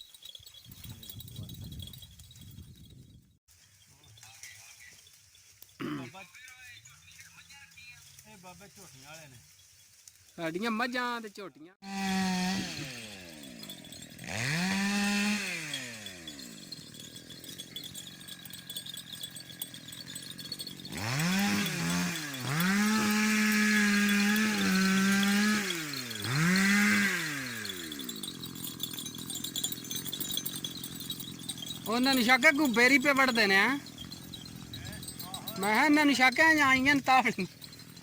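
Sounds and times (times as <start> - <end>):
chainsaw revving and idling: 11.8 - 38.0.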